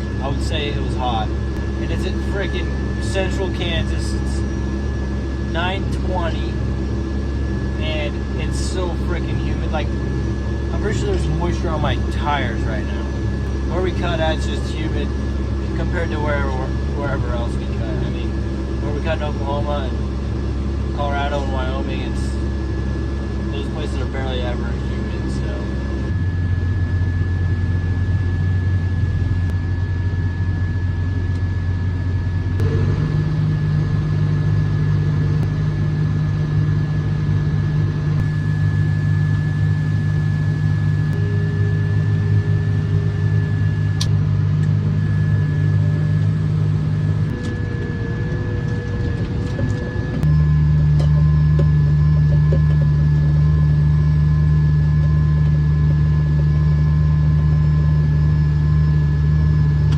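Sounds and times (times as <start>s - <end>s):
harvester engine droning: 0.0s - 59.9s
thin steady whine: 0.0s - 59.9s.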